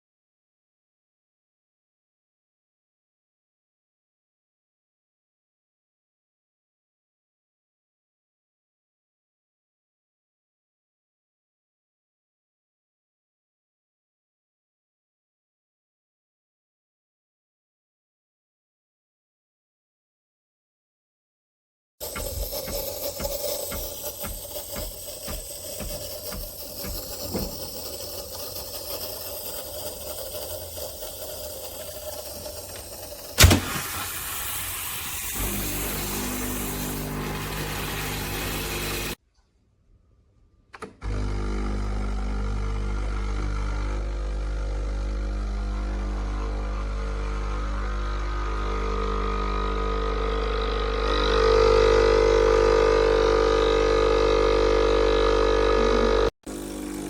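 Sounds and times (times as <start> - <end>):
espresso machine pump humming: 22.0 - 39.2, 41.0 - 57.0
sharp click: 32.7 - 33.8.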